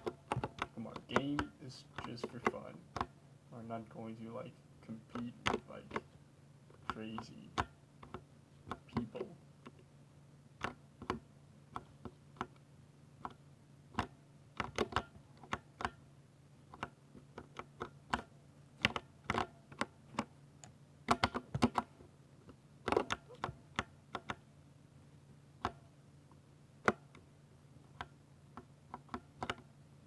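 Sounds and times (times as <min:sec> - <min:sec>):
mechanical keyboard keystrokes: 0:05.1 - 0:06.1, 0:21.1 - 0:21.9, 0:22.8 - 0:24.4.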